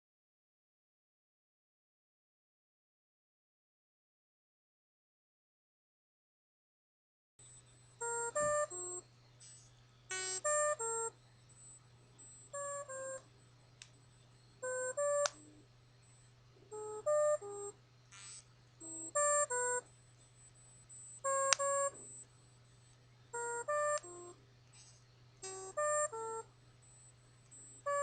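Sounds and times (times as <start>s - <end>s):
faint steady hum: 7.4s - 28.0s
phone beeping melodies: 8.0s - 13.4s, 14.1s - 24.4s, 25.4s - 28.0s.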